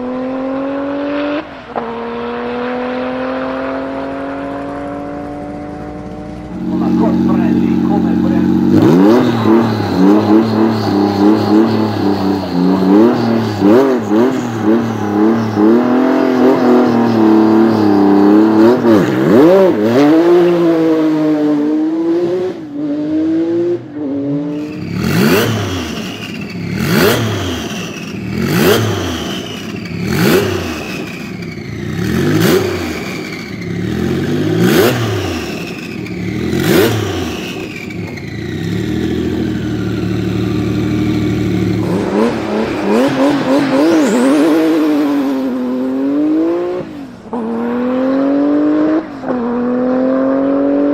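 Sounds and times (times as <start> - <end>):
car engine running: 3.9 - 20.6, 24.6 - 47.4
turbo whistle: 9.0 - 16.6.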